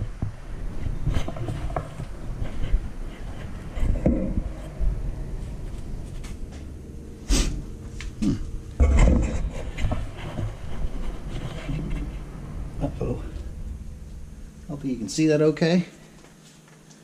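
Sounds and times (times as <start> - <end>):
handling knocks and rustles: 0.0 - 6.7
low rumble: 0.0 - 16.4.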